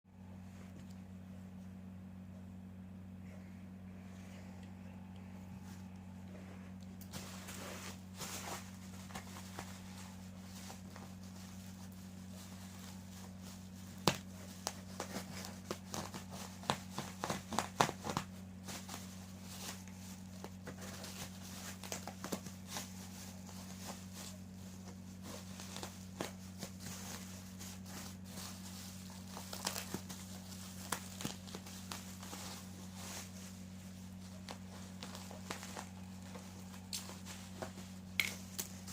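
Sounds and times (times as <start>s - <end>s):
steady low hum: 0.1s - 38.9s
packaging crinkling and tearing: 18.9s - 38.9s.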